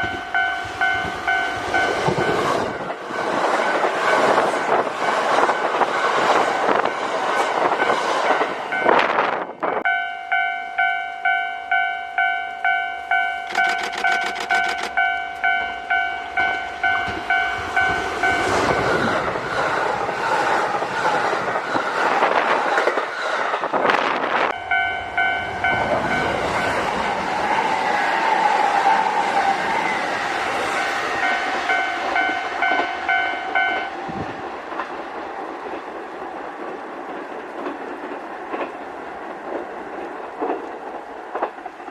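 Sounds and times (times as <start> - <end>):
level crossing warning bell: 0.0 - 3.0, 8.7 - 19.0, 24.5 - 27.1, 31.2 - 34.0
train rushing past: 0.0 - 41.9.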